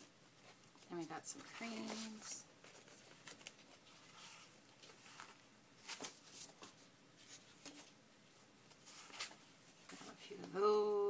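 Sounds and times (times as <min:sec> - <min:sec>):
paper rustling and sliding: 0:01.4 - 0:07.9, 0:08.7 - 0:10.3.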